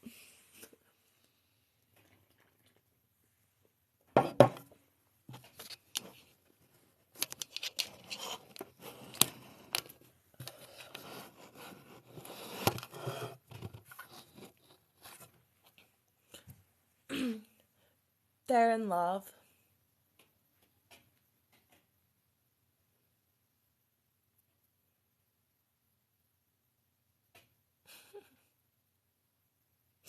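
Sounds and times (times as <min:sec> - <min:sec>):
handling clicks and scrapes: 0:07.1 - 0:15.4.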